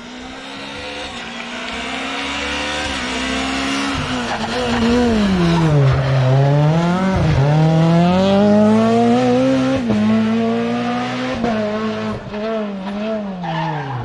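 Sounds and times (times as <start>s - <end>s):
rally car engine accelerating: 0.0s - 14.0s.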